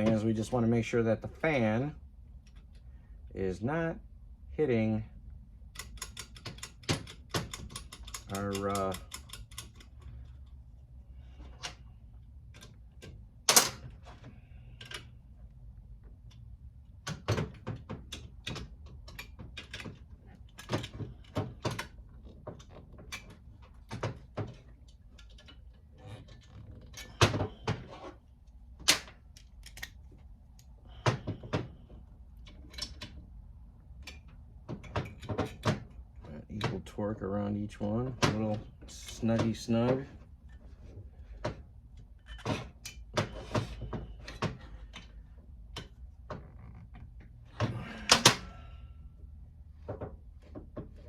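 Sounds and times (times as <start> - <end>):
low steady hum: 0.0 - 51.0
hand tools clicking on metal: 5.7 - 10.5.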